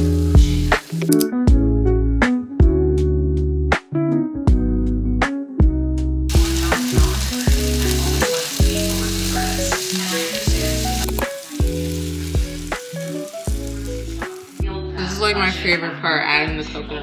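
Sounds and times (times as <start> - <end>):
food sizzling in a pan: 0.0 - 1.1, 6.3 - 14.6
background music with beat: 0.0 - 1.6.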